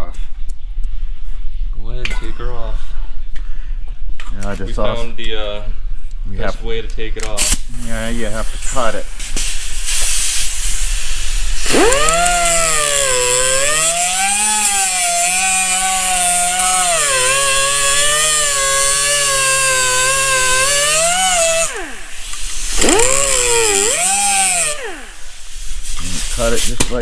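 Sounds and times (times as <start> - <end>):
short hiss: 7.4 - 11.8
rotary cutting tool whine: 11.1 - 26.0.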